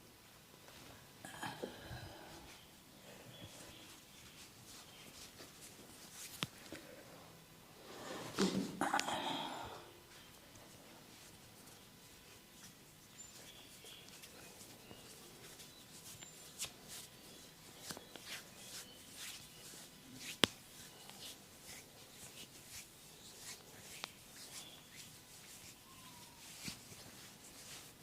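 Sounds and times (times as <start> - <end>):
hands rubbing skin: 3.5 - 6.7, 10.1 - 28.0.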